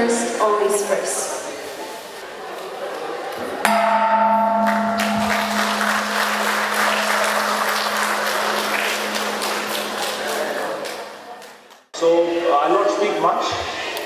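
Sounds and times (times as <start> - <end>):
ringing musical chord: 3.7 - 11.5
low hum: 3.7 - 11.7
audience applause: 4.7 - 11.8.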